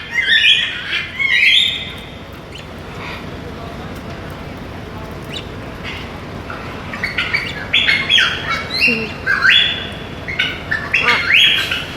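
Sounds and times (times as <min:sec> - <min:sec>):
bird squawking: 0:00.2 - 0:03.4, 0:05.2 - 0:11.9.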